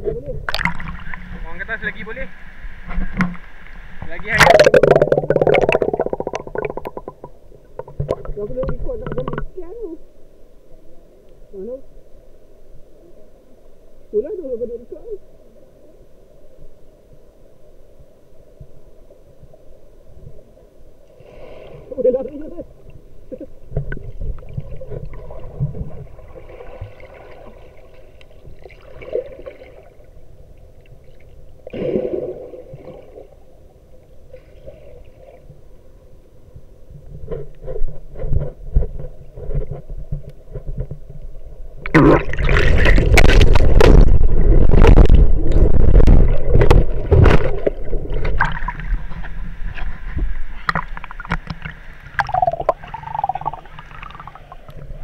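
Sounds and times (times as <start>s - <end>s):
muffled rumbling and knocking: 4.7s - 9.6s.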